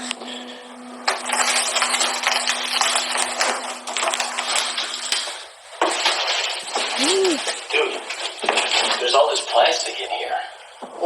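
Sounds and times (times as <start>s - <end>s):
steady low hum: 0.0s - 5.8s
packaging crackling and rustling: 1.1s - 9.8s.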